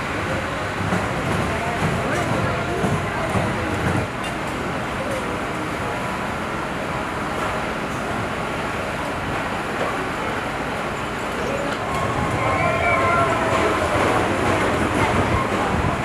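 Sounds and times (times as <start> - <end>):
faint voices: 9.6 - 16.0.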